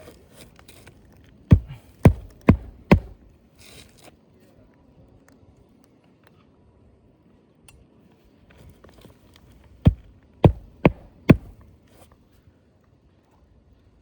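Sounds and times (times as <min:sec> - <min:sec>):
hatchet hammering nail: 0:01.5 - 0:03.2, 0:09.9 - 0:11.6.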